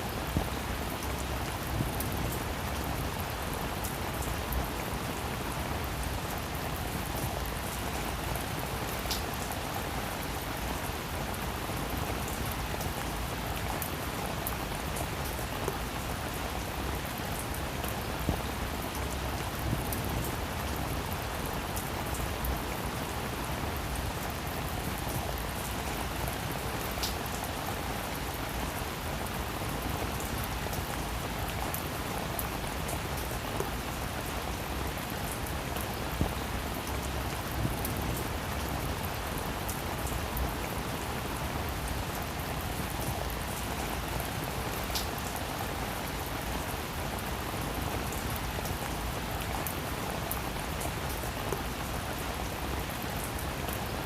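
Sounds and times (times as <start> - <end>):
rain on a roof: 0.0 - 54.0.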